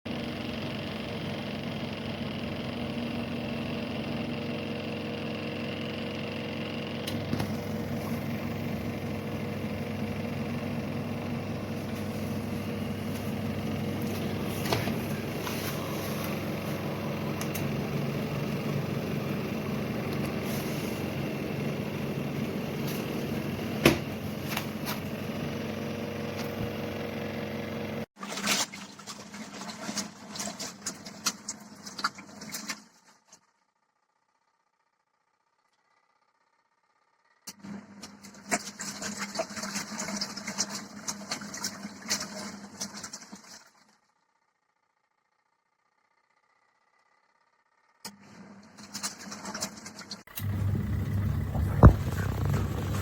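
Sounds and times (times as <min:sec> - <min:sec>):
washing machine motor humming: 0:00.1 - 0:28.1, 0:50.3 - 0:53.0.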